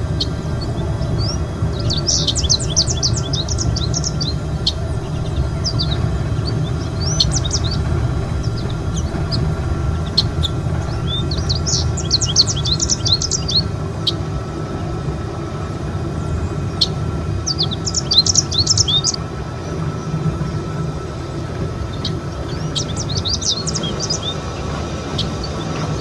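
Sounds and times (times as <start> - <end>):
low rumble: 0.0 - 26.0
small birds chirping: 0.0 - 26.0.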